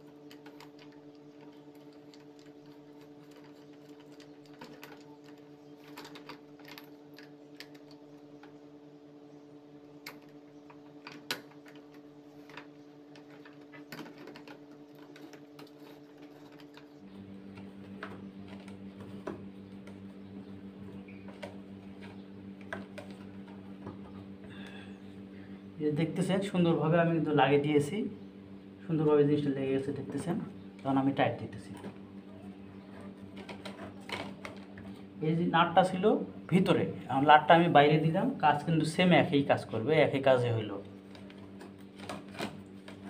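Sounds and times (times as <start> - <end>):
steady background hum: 0.0 - 43.0
metal parts clicking and tapping: 0.3 - 8.5.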